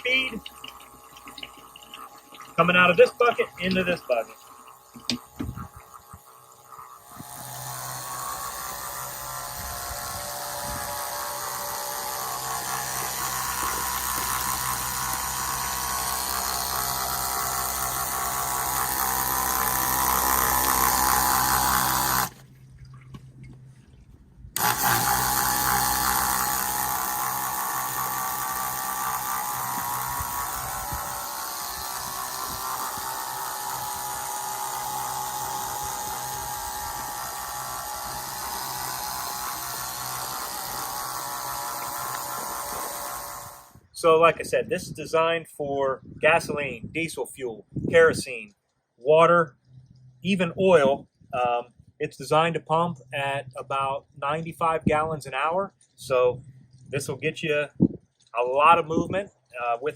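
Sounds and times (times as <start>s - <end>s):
water pouring into a bucket: 0.0s - 23.0s, 24.6s - 43.7s
electric pump motor humming: 0.0s - 23.8s, 24.5s - 44.9s.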